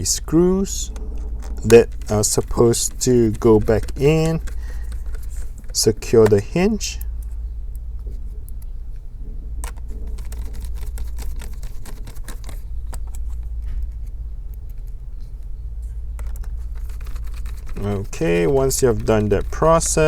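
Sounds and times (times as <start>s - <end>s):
steady low hum: 0.0s - 20.0s
screwdriver and screws ticking: 0.8s - 8.7s, 16.1s - 20.0s.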